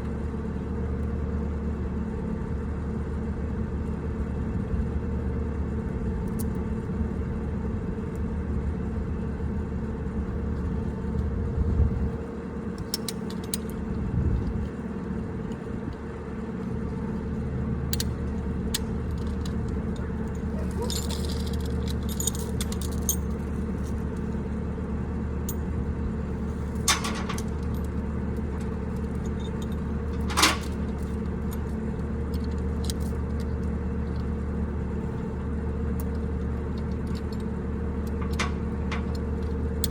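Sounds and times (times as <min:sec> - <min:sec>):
engine running: 0:00.0 - 0:39.9
metal jangling: 0:19.0 - 0:24.0, 0:26.6 - 0:28.0, 0:28.6 - 0:31.7, 0:38.1 - 0:39.9
metal clinks: 0:19.1 - 0:24.0, 0:26.7 - 0:28.0, 0:28.9 - 0:31.7.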